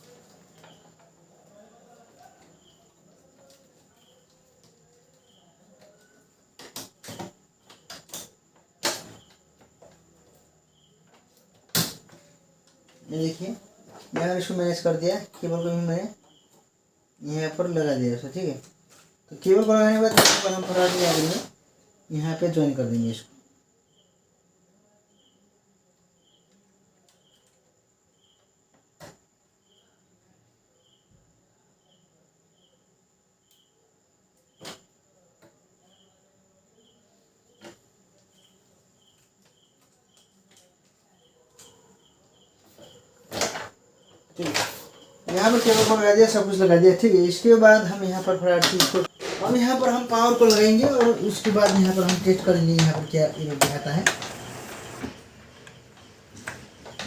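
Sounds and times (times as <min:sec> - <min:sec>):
high cricket-like chirps: 0:00.0 - 0:57.0.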